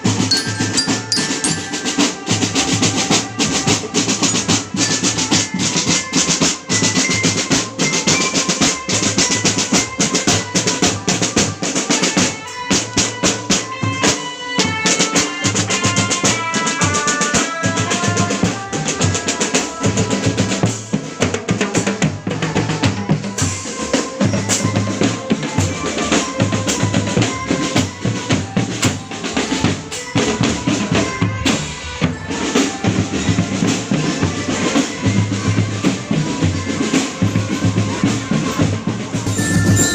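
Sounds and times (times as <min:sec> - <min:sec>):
snare drums with rolls: 0:00.0 - 0:39.9
pitched melody line: 0:00.1 - 0:02.5, 0:39.2 - 0:39.9.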